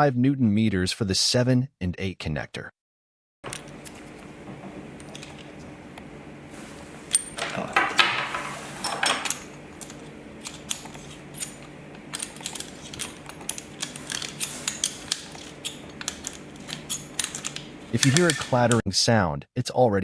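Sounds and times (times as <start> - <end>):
torque wrench metallic scraping: 8.6 - 18.8.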